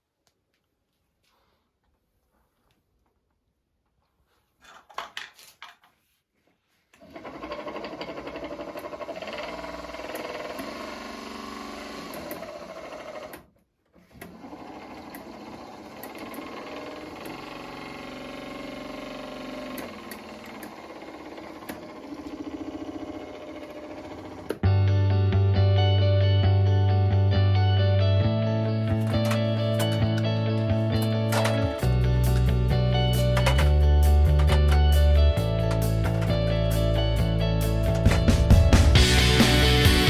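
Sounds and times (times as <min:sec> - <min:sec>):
clicks: 0:29.0 - 0:36.6.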